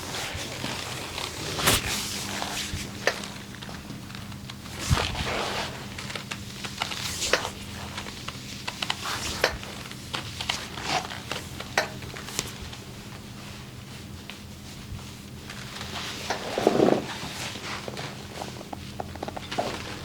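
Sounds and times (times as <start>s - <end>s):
steady low hum: 0.0s - 20.0s
hands rubbing skin: 0.1s - 2.9s.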